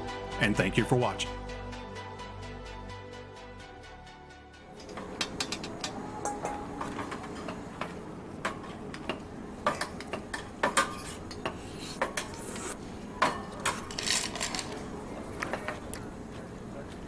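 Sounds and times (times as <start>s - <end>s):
small hard objects clinking: 13.8s - 14.9s.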